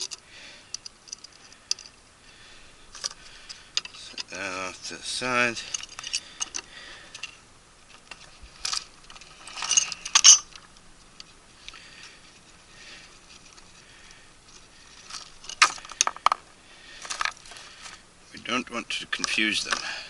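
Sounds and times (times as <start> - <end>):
metal parts and tools rattling: 0.0 - 2.0, 2.9 - 7.4, 8.0 - 10.7, 14.5 - 16.4, 17.0 - 18.0.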